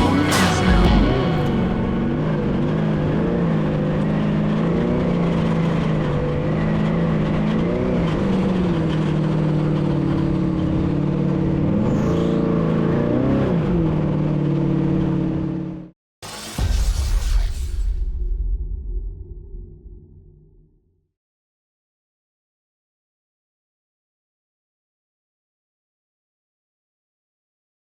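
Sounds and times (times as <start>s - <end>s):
truck engine revving: 0.0s - 15.8s.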